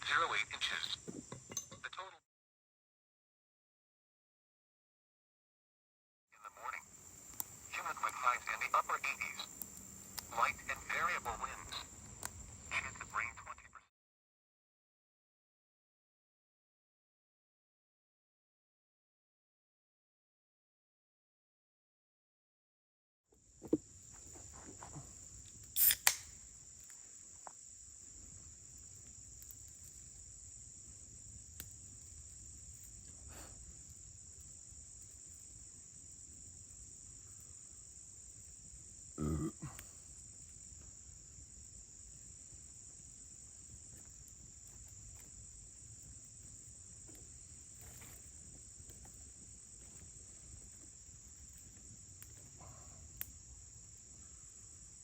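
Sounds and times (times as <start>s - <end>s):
insects trilling: 0.0s - 2.1s, 6.4s - 13.8s, 23.4s - 55.0s.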